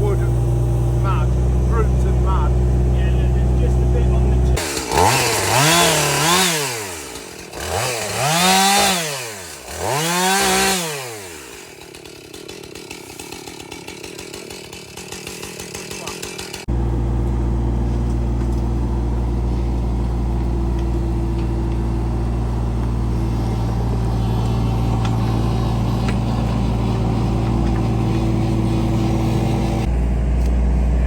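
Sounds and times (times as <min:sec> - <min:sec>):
engine droning steadily: 0:00.0 - 0:06.3, 0:16.6 - 0:31.0.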